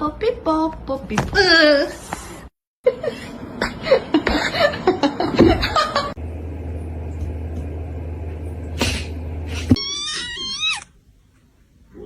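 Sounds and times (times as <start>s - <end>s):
steady low hum: 2.9s - 9.8s.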